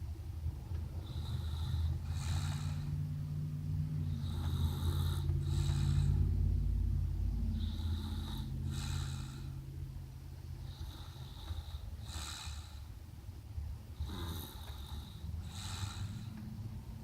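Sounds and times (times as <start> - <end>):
person snoring: 1.0 - 3.0, 4.0 - 6.3, 7.5 - 9.6, 14.0 - 16.4.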